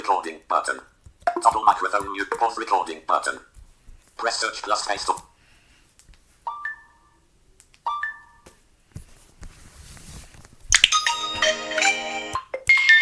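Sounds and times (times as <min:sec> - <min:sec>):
phone notification chimes: 0:06.5 - 0:07.2, 0:07.9 - 0:08.4.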